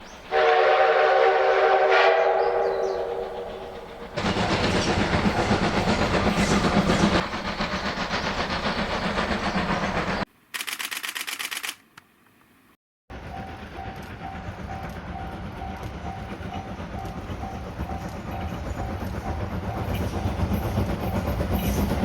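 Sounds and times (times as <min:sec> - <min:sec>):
steam locomotive pulsing chugging: 0:00.0 - 0:11.6, 0:13.1 - 0:22.0
steam whistle blast: 0:00.3 - 0:03.8.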